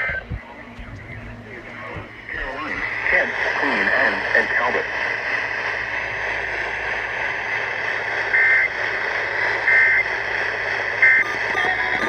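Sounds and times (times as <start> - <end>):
radio static hiss: 0.0 - 12.0
warbling digital data bursts: 11.0 - 12.0.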